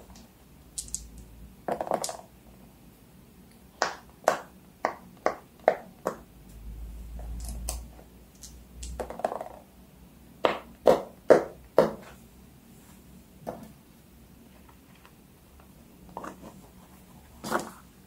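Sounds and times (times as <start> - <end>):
rubbing and handling noise: 14.4 - 18.0.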